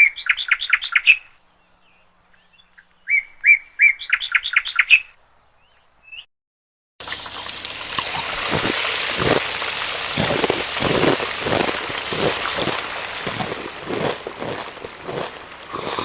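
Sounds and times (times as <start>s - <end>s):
heavy rain pouring and splattering: 7.0s - 16.0s.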